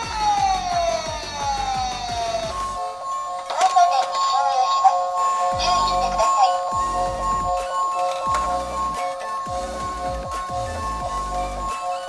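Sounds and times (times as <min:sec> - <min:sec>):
thumping bass beat: 0:00.0 - 0:02.8, 0:05.6 - 0:11.8
held high electronic tones: 0:00.0 - 0:12.0.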